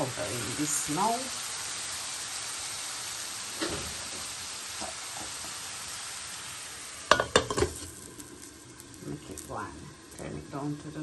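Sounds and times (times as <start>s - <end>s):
chicken sizzling in a pot: 0.0s - 11.0s.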